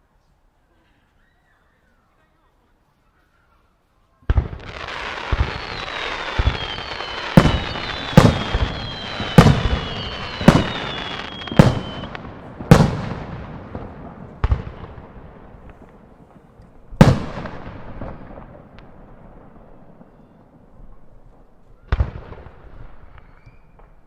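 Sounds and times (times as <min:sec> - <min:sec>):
firework bangs with echo: 0:04.3 - 0:20.7
firework crackling: 0:04.3 - 0:24.0
firework whistles: 0:04.8 - 0:12.2, 0:23.1 - 0:24.0.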